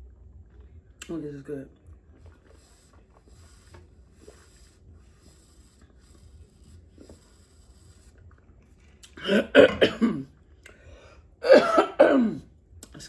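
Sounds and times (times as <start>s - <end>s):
woman coughing harshly: 9.2s - 10.3s, 11.4s - 12.5s.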